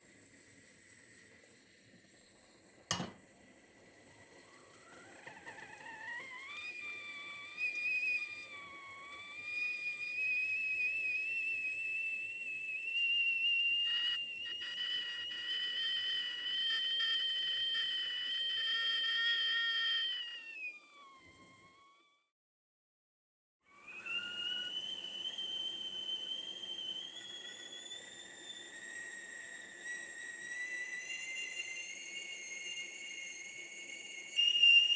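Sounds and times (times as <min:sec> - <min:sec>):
stovetop kettle whistling: 0:00.0 - 0:22.3, 0:23.7 - 0:34.9
kettle click: 0:02.9 - 0:03.2.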